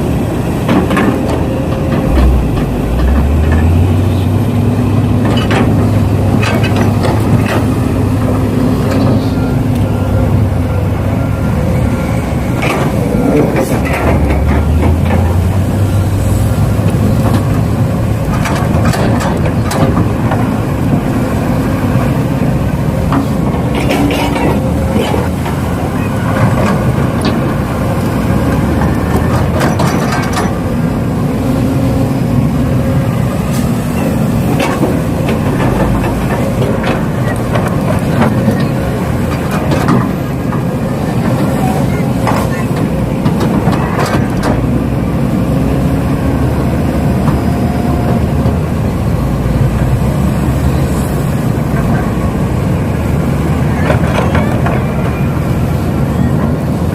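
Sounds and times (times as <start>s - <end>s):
clicks and clatter: 18.2s - 20.5s, 23.1s - 25.6s, 28.8s - 30.6s, 34.5s - 40.6s.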